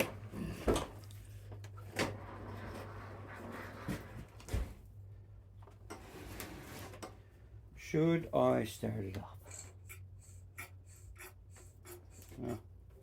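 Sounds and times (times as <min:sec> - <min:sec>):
steady low hum: 0:07.0 - 0:13.0.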